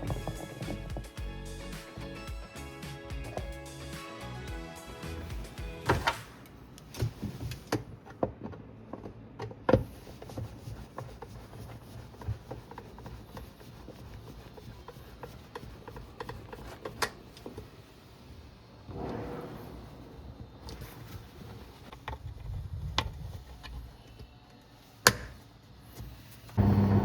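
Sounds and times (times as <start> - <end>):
rubbing and scraping: 0.0 - 2.2, 9.8 - 18.3, 18.9 - 24.1.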